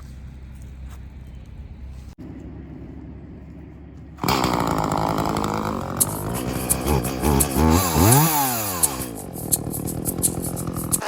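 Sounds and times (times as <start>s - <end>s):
low steady rumble: 0.0s - 11.0s
chainsaw running at high revs: 4.2s - 11.0s.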